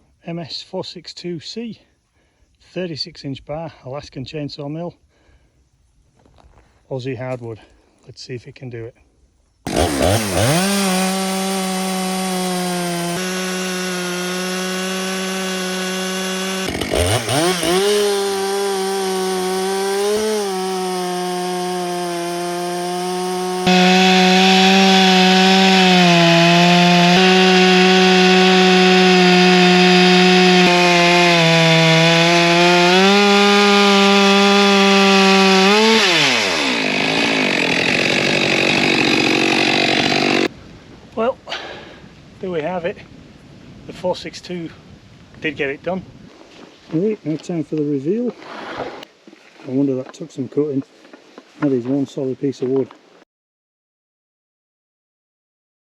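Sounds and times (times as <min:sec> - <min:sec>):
chainsaw ripping log: 0:09.7 - 0:40.5.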